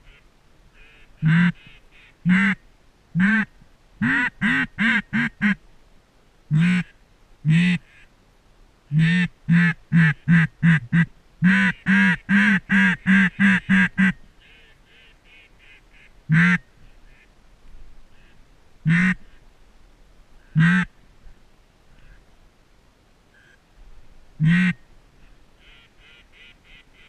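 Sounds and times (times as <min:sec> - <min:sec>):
duck quacking: 0:00.8 - 0:02.6, 0:03.2 - 0:05.6, 0:06.5 - 0:08.1, 0:08.9 - 0:17.3, 0:18.2 - 0:19.4, 0:20.5 - 0:20.9, 0:24.4 - 0:24.8, 0:25.6 - 0:27.0.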